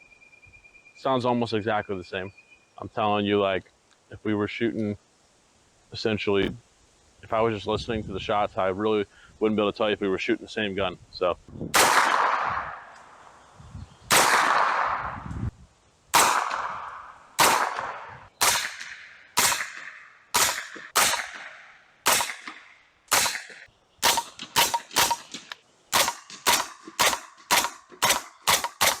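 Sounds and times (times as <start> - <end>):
suppressed gun shots: 11.8 - 12.9, 14.1 - 15.2, 16.2 - 29.0.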